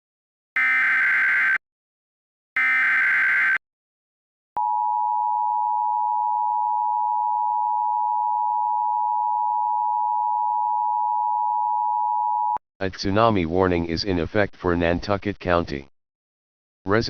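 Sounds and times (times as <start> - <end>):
harsh digital data screech: 0.6 - 1.6, 2.6 - 3.6
steady dual tone alert signal: 0.6 - 1.6, 2.6 - 3.6.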